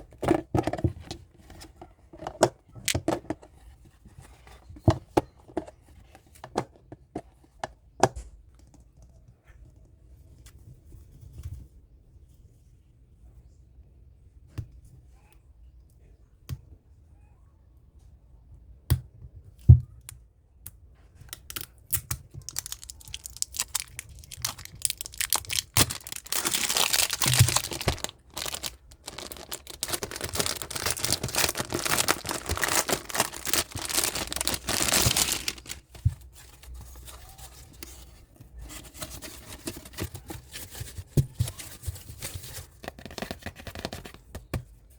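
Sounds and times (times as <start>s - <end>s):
plastic wrappers crinkling and tearing: 21.3s - 37.9s.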